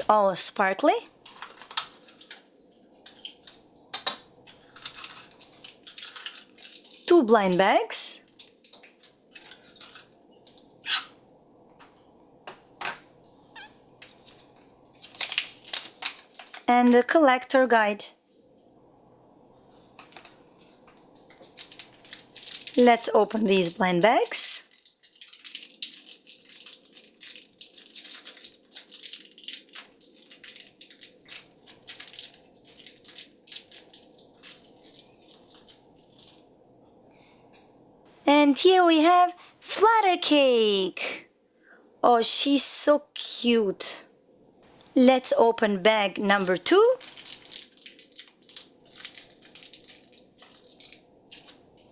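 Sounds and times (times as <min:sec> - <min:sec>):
plastic wrapper crinkling: 0:01.2 - 0:11.1, 0:13.4 - 0:16.7, 0:19.6 - 0:36.6, 0:46.2 - 0:51.9
plastic packaging rustling: 0:01.2 - 0:11.2, 0:12.6 - 0:16.7, 0:19.5 - 0:36.6, 0:46.2 - 0:51.9.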